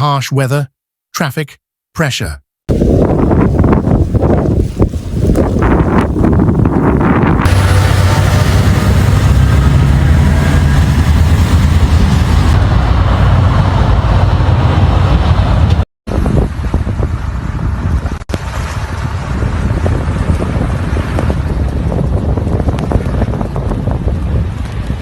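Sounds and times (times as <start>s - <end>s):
wind buffeting microphone: 2.7s - 25.0s
vehicle rumble: 7.2s - 23.8s.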